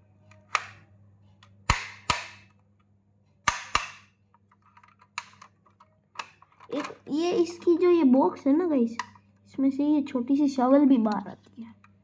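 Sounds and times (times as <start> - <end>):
metal toy parts clicking shut: 0.3 - 0.8, 1.7 - 2.5, 3.5 - 4.1, 4.7 - 7.0.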